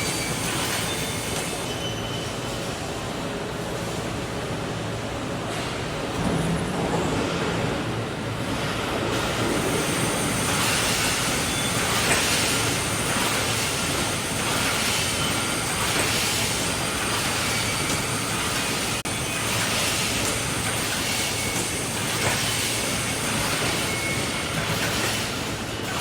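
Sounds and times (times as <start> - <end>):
welding machine running: 9.1 - 26.0.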